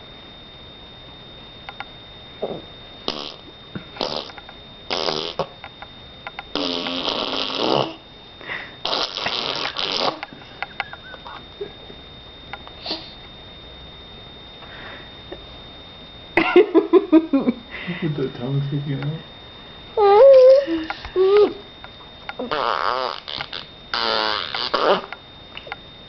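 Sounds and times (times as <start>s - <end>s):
child blowing raspberries: 2.4s - 5.5s, 6.5s - 8.0s, 8.6s - 10.3s, 22.4s - 25.1s.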